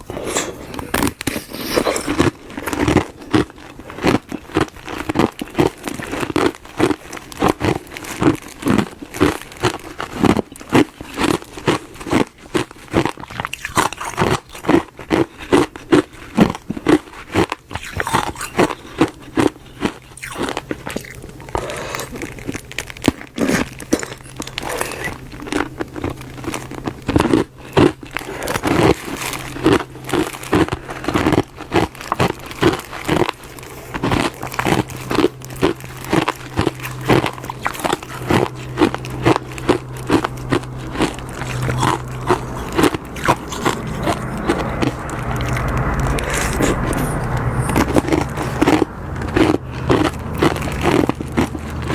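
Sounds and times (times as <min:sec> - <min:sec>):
ice being chewed: 0:00.0 - 0:51.9.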